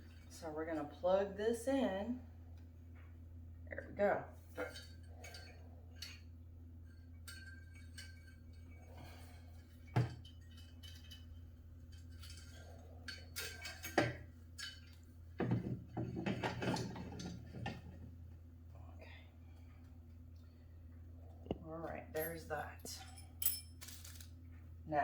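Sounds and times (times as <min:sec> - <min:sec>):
steady low hum: 0:00.0 - 0:25.0
parts clinking and rattling: 0:04.5 - 0:18.0, 0:22.1 - 0:24.4.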